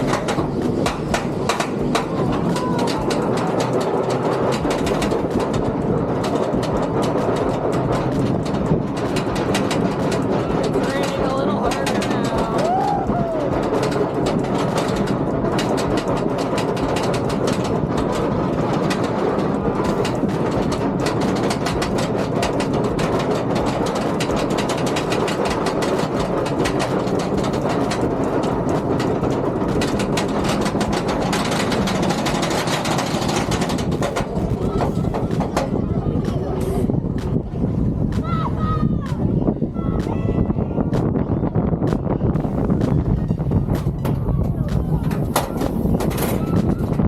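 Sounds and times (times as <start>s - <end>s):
roller coaster rumbling and rattling: 0.0s - 47.0s.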